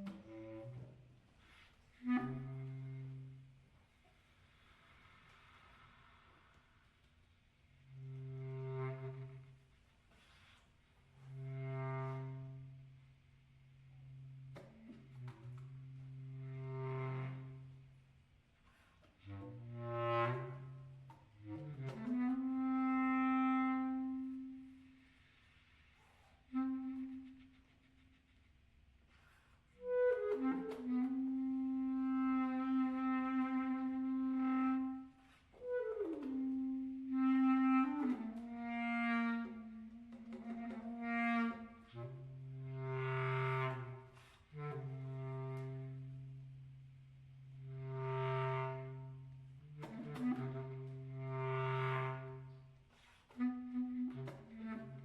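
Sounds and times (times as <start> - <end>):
clarinet playing long held notes: 21.6 - 25.0, 26.4 - 27.6, 29.8 - 46.6, 47.4 - 55.0.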